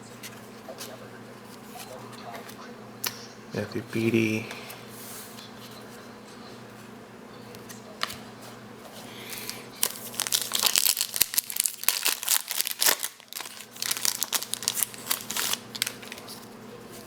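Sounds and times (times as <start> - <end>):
plastic wrapper tearing and crinkling: 9.8 - 16.5.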